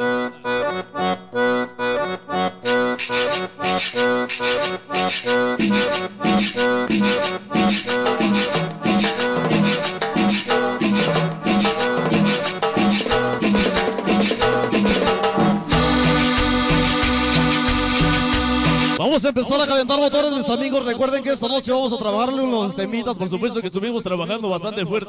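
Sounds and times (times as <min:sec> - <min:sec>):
accordion melody: 0:00.0 - 0:19.0
bass line: 0:00.0 - 0:19.0
percussion beat: 0:02.6 - 0:19.0.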